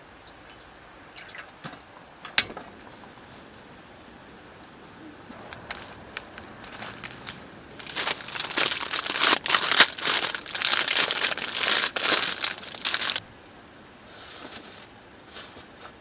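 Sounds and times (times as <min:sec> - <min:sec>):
crinkling and crumpling: 0:05.3 - 0:13.2.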